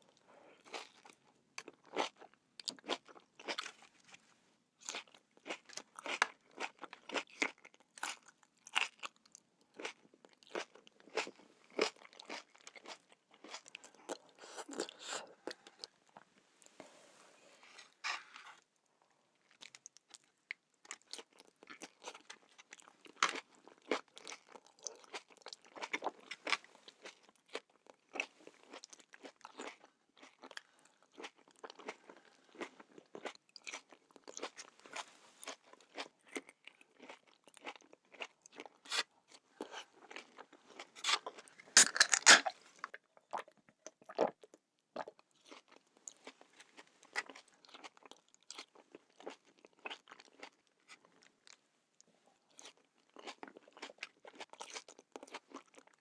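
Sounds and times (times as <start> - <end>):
person biting and chewing: 32.6 - 42.6.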